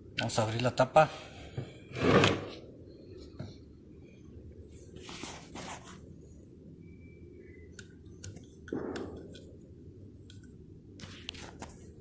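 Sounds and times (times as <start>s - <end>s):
pump parts rustling and scraping: 5.0s - 6.0s.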